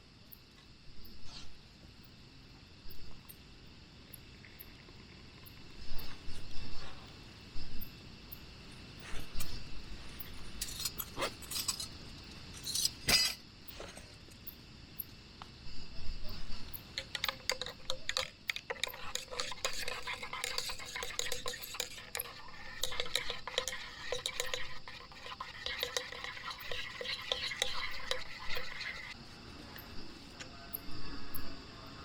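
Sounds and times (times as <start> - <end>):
utensil scraping in a pot: 9.0 - 14.2, 16.9 - 29.2
metal utensils clinking on cookware: 10.6 - 12.0, 12.6 - 13.4.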